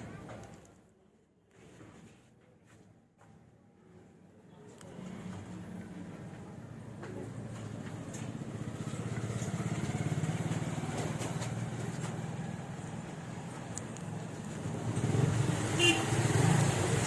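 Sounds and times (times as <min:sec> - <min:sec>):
vehicle engine droning: 0:04.9 - 0:17.0.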